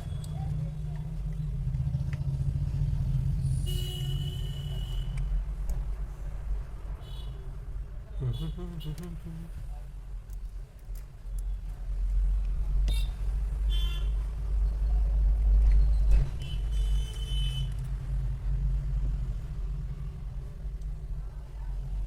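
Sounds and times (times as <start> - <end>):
road traffic rumble: 0.0 - 22.0
vehicle horn toots: 3.7 - 5.2.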